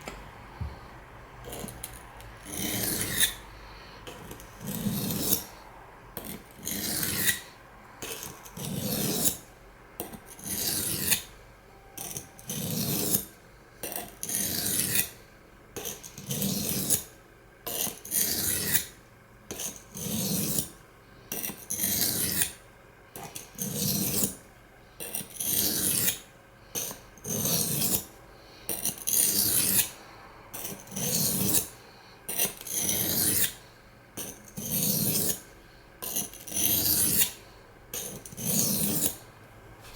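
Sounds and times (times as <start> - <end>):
knife scraping on whetstone: 1.5 - 3.4, 4.1 - 5.5, 6.2 - 11.3, 12.1 - 15.2, 15.8 - 17.1, 17.7 - 18.9, 19.5 - 20.7, 23.3 - 24.4, 25.0 - 28.1, 28.7 - 30.0, 30.6 - 33.6, 34.2 - 39.2.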